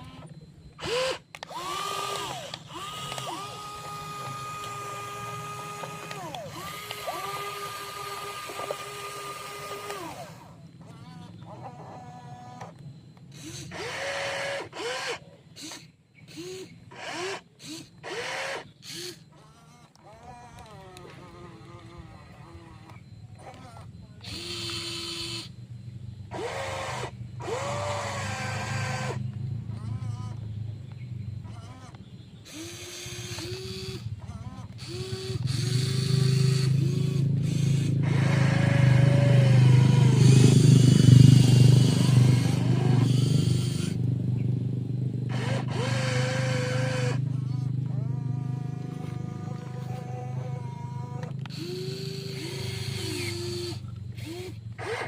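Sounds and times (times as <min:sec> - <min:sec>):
small electric motors whirring: 0:00.0 - 0:55.0
steady low hum: 0:00.0 - 0:55.0.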